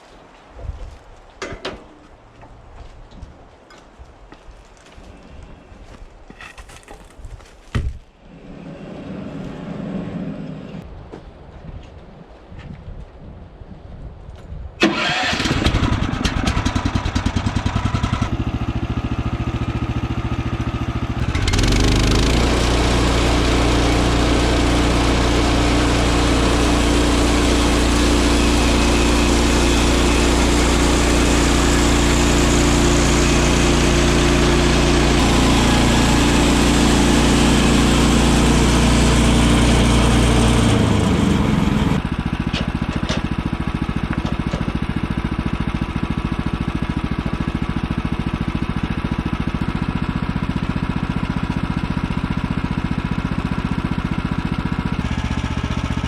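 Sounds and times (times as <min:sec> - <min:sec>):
gas engine running: 0:14.8 - 0:56.0.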